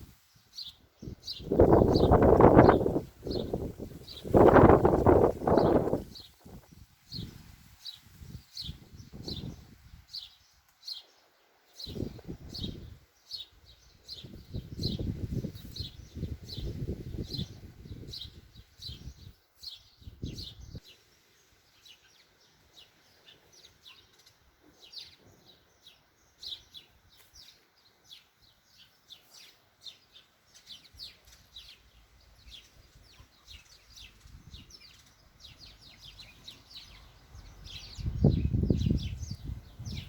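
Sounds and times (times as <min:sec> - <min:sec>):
small birds chirping: 0:00.0 - 0:40.0
wind rumbling on microphone: 0:01.0 - 0:10.3, 0:11.8 - 0:13.1, 0:13.7 - 0:20.8, 0:32.5 - 0:40.0.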